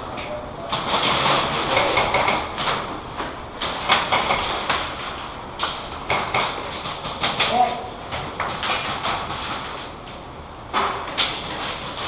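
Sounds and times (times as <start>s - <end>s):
sharp knocks and clicks: 5.6s - 9.9s.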